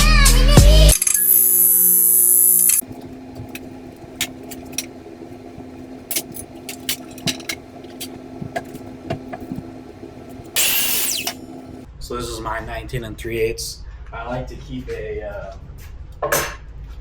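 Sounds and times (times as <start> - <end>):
music: 0.0 - 0.9
steady low hum: 0.6 - 11.9.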